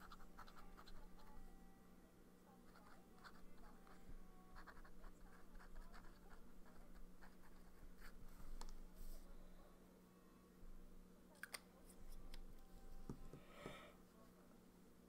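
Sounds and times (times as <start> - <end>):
pen nib scratching on paper: 0.0 - 1.4, 2.7 - 4.0, 4.6 - 8.2.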